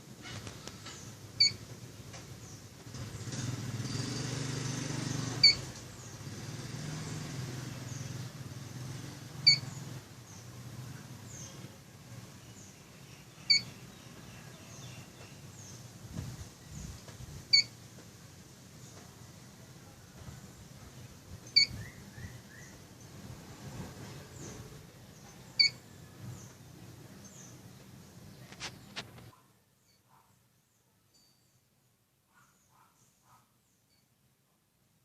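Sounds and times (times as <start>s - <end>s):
vehicle engine rumble passing: 0.2s - 29.3s
high electronic warning beep: 9.4s - 9.6s, 13.5s - 13.7s, 17.5s - 17.7s, 21.6s - 21.8s.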